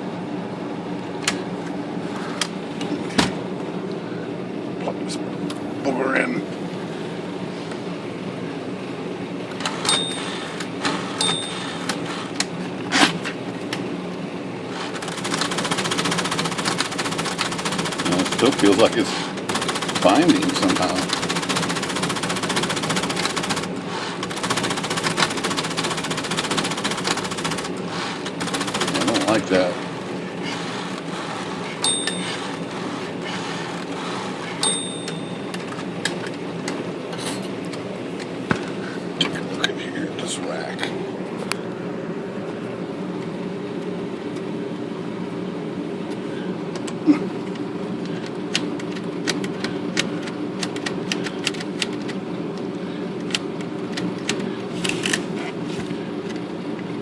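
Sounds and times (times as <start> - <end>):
electric typewriter motor running: 9.5 - 12.7, 14.6 - 36.8, 46.7 - 55.3
typewriter bell dings: 9.9 - 10.5, 11.2 - 11.8, 31.8 - 32.5, 34.6 - 35.6
typewriter mechanical clicks and clunks: 14.8 - 29.5, 48.5 - 52.2
fast clatter of clicks: 14.9 - 18.8.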